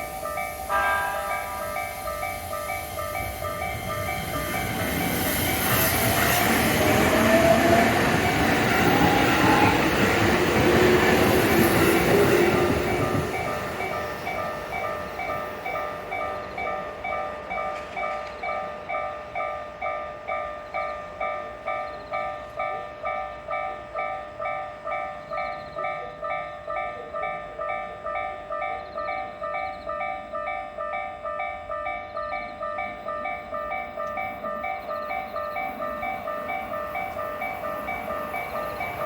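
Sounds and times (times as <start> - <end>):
level crossing alarm clanging: 0.0 - 19.6.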